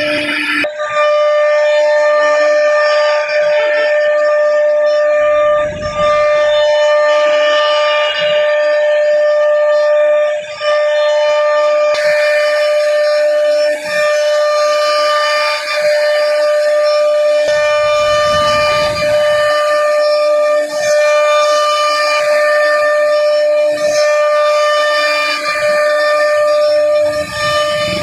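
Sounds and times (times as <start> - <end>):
router spindle whining carving wood: 0.0 - 28.0.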